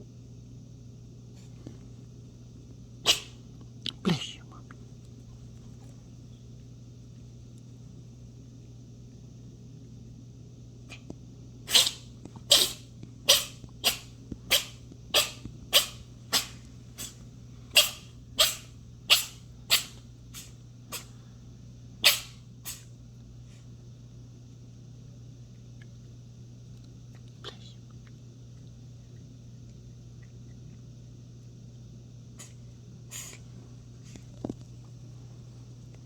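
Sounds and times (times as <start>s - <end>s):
cat sneezing: 3.0s - 4.4s, 11.7s - 21.2s, 22.0s - 22.9s, 32.4s - 33.5s.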